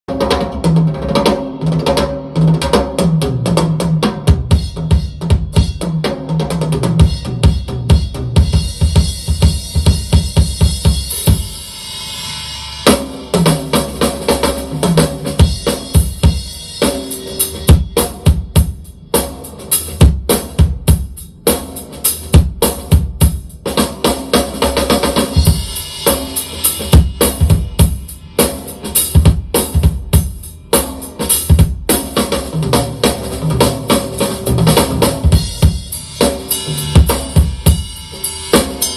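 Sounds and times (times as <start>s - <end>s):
drum-heavy music through speaker: 0.1s - 38.9s.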